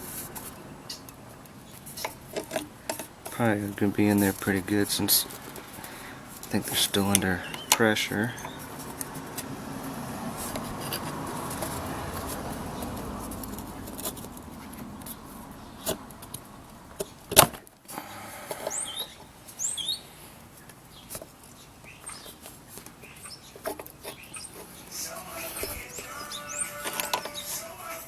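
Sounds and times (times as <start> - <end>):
bird chirping: 0.3 - 2.2, 3.4 - 9.2, 18.6 - 28.0.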